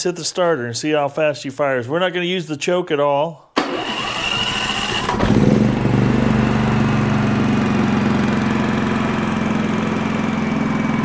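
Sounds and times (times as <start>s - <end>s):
starter cranking: 3.6s - 5.8s
generator engine running: 3.6s - 11.0s.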